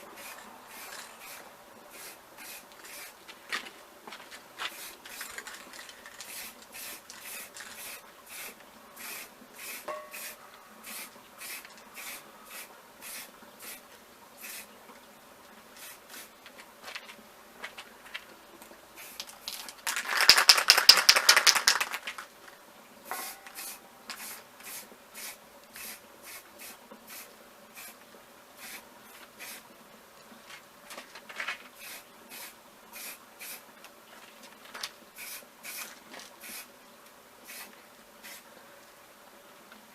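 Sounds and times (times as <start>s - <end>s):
short scratchy strokes: 0.0s - 3.2s, 4.6s - 14.7s.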